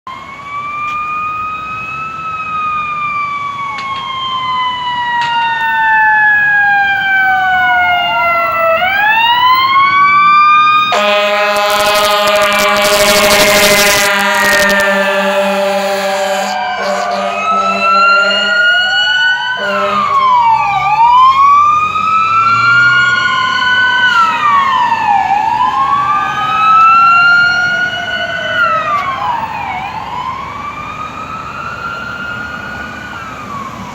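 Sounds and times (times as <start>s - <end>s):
emergency siren wailing: 0.0s - 33.9s
loud horn blast: 10.8s - 18.9s, 19.6s - 20.4s.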